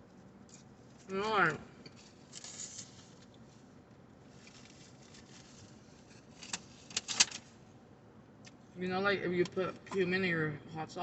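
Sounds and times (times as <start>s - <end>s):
soft rustle: 0.0s - 7.7s
wrapper crackling: 2.0s - 3.4s, 4.3s - 7.5s.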